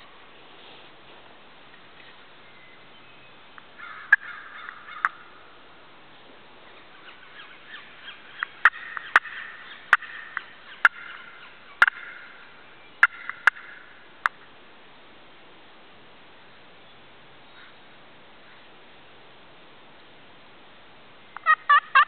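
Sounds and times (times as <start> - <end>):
turkey gobbling: 3.8 - 5.2, 6.9 - 13.9, 21.4 - 22.0.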